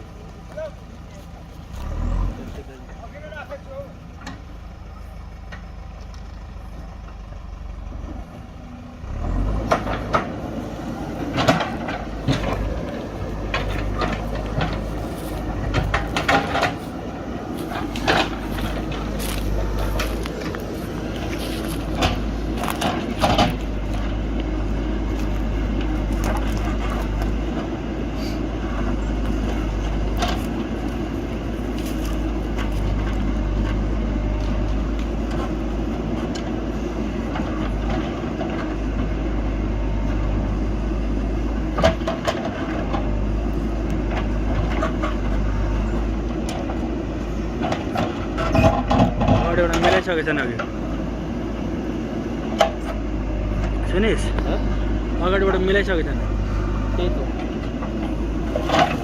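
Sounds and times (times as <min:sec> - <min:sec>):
diesel engine running: 0:00.0 - 0:59.0
sharp knocks and cracks: 0:11.3 - 0:16.9, 0:17.6 - 0:20.6, 0:21.2 - 0:24.1.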